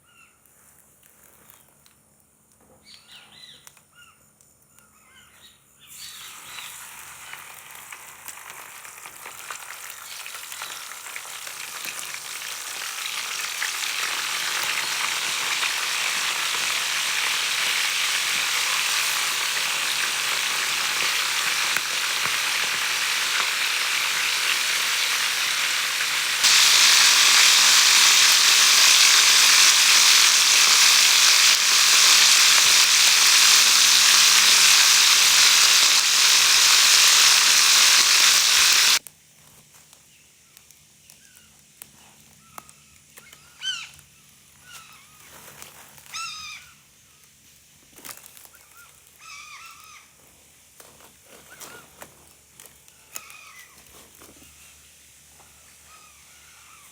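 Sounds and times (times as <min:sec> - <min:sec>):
fish frying in hot oil: 0:06.1 - 0:39.0.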